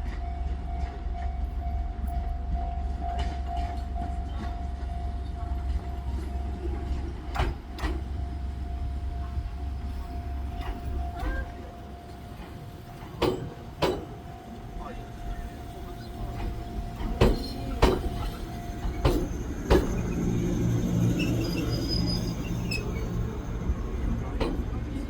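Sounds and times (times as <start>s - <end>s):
level-crossing warning bell: 0.0s - 24.4s
electric train rumbling: 0.0s - 25.0s
train wheels clacking on rail joint: 5.7s - 8.3s, 9.2s - 14.6s, 16.0s - 23.2s, 24.0s - 25.0s.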